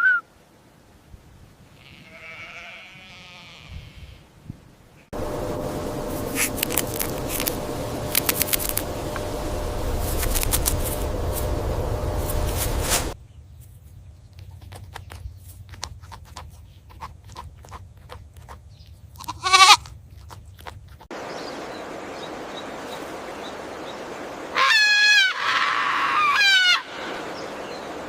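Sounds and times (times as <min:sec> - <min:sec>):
goats bleating: 0:01.8 - 0:04.2, 0:19.2 - 0:19.9
rustling noise: 0:05.2 - 0:16.6.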